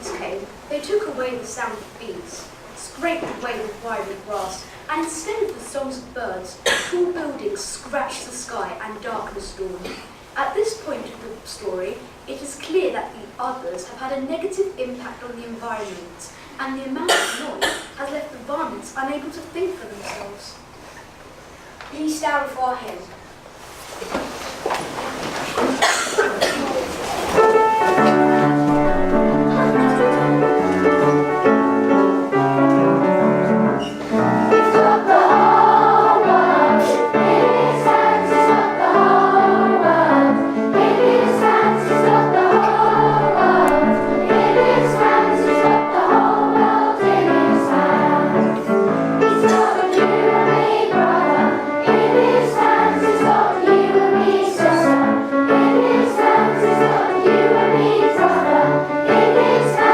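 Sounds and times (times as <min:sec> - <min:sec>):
piano playing: 0:27.0 - 0:59.9
children singing together: 0:34.5 - 0:59.9.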